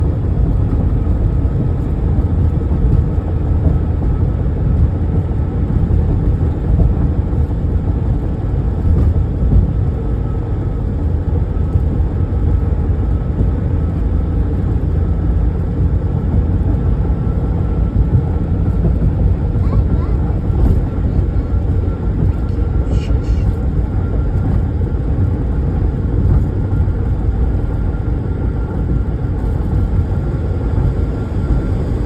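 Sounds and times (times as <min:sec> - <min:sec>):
diesel locomotive idling: 0:15.9 - 0:32.0.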